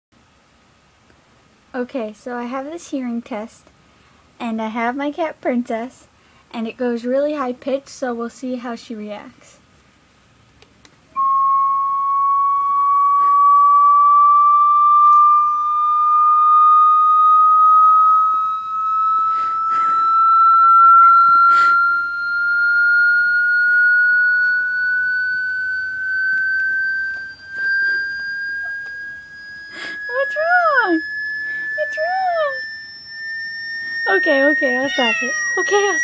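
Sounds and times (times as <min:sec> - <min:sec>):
rising pure sweep tone: 0:11.1 - 0:36.0.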